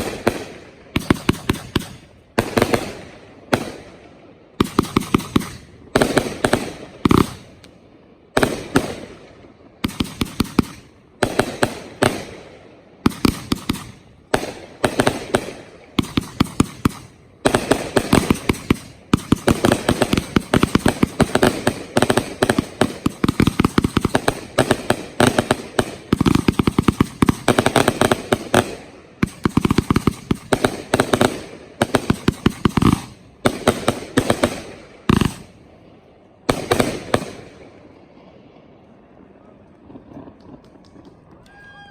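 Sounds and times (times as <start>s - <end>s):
fireworks pops and bangs: 0.0s - 4.0s, 4.6s - 7.8s, 13.0s - 35.5s, 36.5s - 37.5s, 39.8s - 41.5s.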